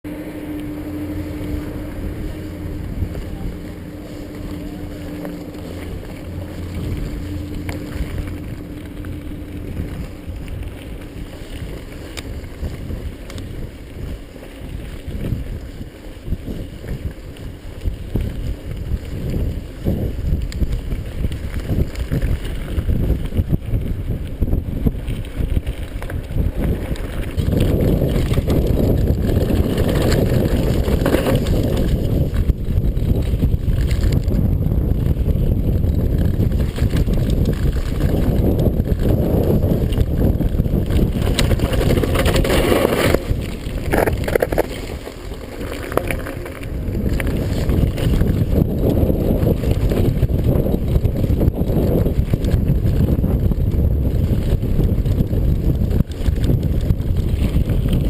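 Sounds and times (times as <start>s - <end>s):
bike tyres rumbling on dirt: 0.0s - 58.0s
wind buffeting microphone: 0.0s - 58.0s
bike frame rattling: 0.2s - 58.0s.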